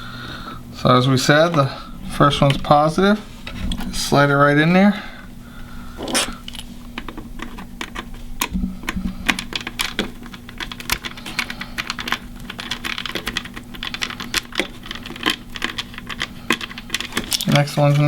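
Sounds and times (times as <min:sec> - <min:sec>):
low hum: 0:00.0 - 0:12.5.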